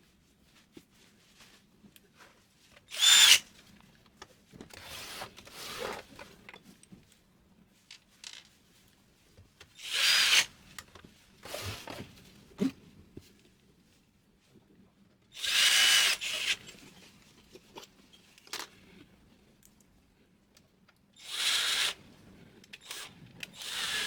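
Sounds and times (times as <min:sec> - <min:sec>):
electric power tool whirring: 0:02.9 - 0:03.4, 0:09.8 - 0:10.5, 0:15.4 - 0:16.6, 0:21.2 - 0:22.0, 0:22.8 - 0:24.0.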